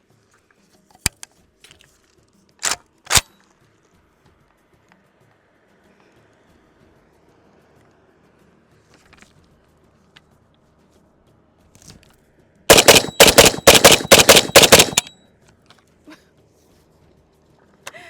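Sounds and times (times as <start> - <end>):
pistol shots in quick pairs: 12.7 - 15.1.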